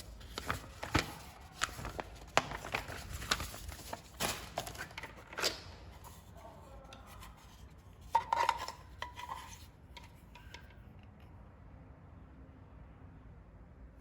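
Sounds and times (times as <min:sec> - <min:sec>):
clicks and knocks of hard objects: 0:06.8 - 0:11.2.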